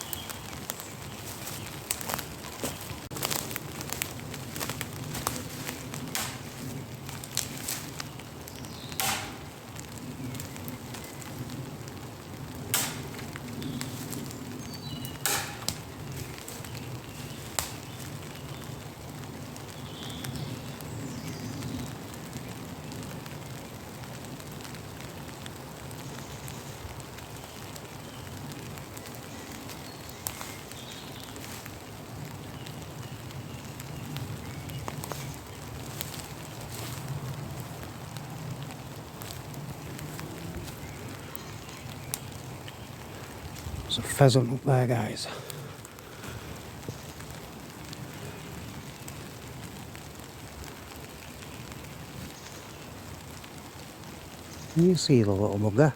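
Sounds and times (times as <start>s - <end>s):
rain falling: 0.0s - 55.9s
sharp cracks or taps: 1.4s - 11.3s, 12.7s - 14.3s, 15.0s - 16.8s, 17.4s - 18.1s.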